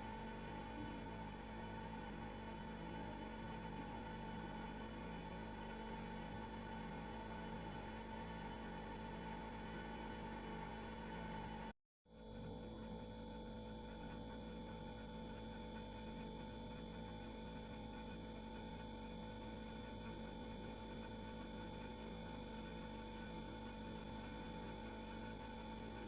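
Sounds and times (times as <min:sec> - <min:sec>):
refrigerator humming: 0:00.0 - 0:11.7.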